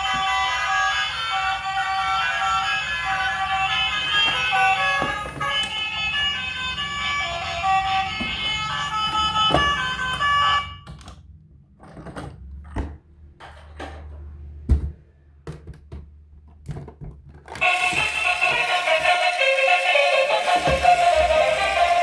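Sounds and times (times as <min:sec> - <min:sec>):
music with siren-like tones: 0:00.0 - 0:10.8, 0:17.6 - 0:22.0
plastic toys knocking and clicking: 0:03.9 - 0:06.0, 0:07.8 - 0:14.2, 0:15.4 - 0:18.8.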